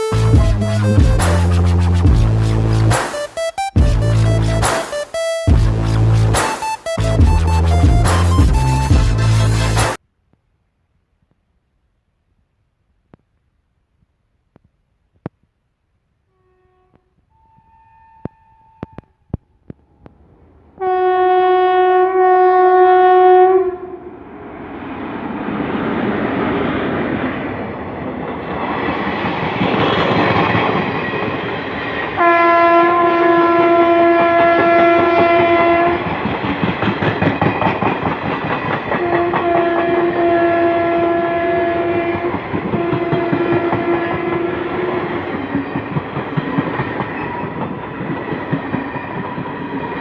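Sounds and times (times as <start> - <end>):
locomotive horn blast: 0.0 - 10.0, 16.3 - 19.2, 20.8 - 24.2, 32.2 - 36.1, 38.9 - 45.2
train running past: 0.0 - 10.0, 18.8 - 50.0
wheels clattering over rail joints: 34.2 - 40.3, 42.2 - 50.0.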